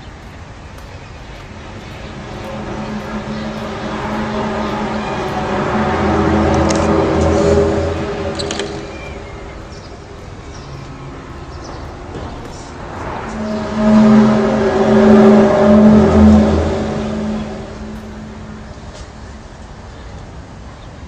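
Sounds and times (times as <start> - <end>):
low trumpet-like tone: 1.4 - 19.4.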